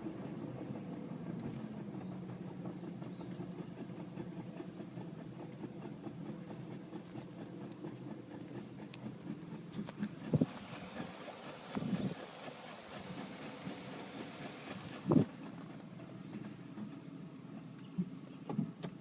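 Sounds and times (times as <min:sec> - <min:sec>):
car engine hum: 0:00.0 - 0:19.0.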